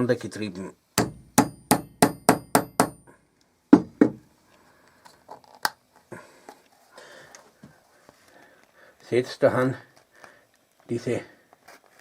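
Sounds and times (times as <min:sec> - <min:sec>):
hammer tapping metal tool: 0:01.0 - 0:03.1.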